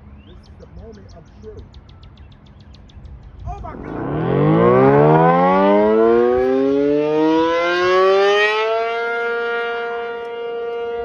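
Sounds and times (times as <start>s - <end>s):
tornado siren winding up: 3.7s - 11.0s.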